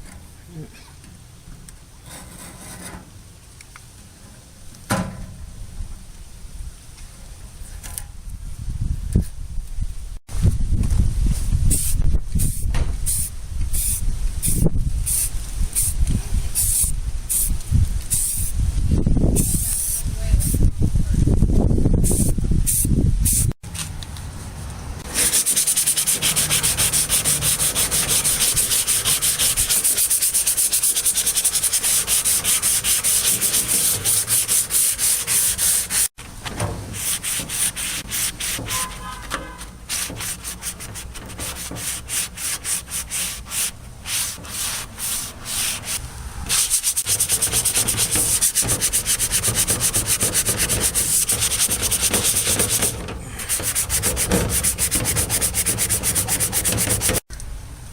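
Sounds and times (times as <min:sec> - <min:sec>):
sanding strokes on metal chest: 0:25.0 - 0:36.2, 0:36.9 - 0:57.2.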